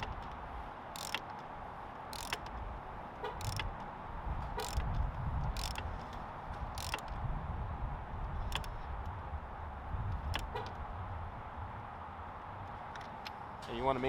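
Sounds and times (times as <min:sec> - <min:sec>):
ratchet wrench clicking: 0:00.0 - 0:02.6, 0:03.3 - 0:06.1, 0:06.7 - 0:07.2, 0:08.4 - 0:08.8.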